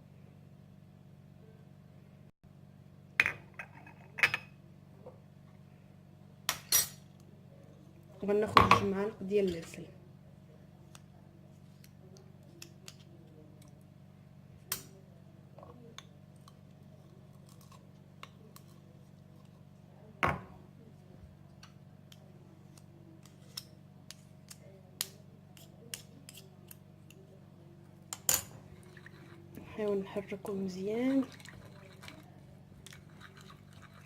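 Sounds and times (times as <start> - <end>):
faint steady hum: 0.0 - 34.0.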